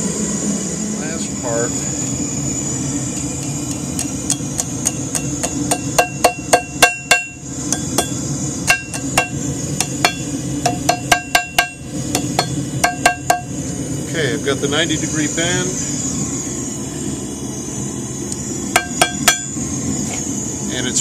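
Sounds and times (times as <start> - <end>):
background hum: 0.0 - 21.0
hammer striking steel on anvil: 4.0 - 13.5, 18.7 - 19.6
anvil ringing: 4.8 - 13.5, 18.8 - 19.5.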